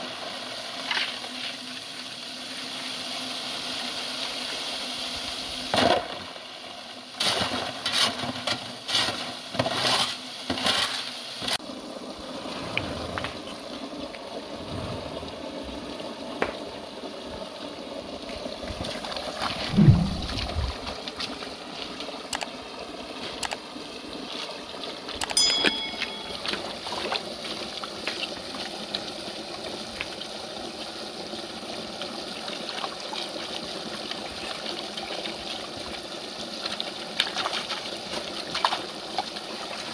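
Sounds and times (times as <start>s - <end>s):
flowing water: 0.0s - 39.9s
water splashing: 18.6s - 22.1s
low falling sound: 19.6s - 20.9s.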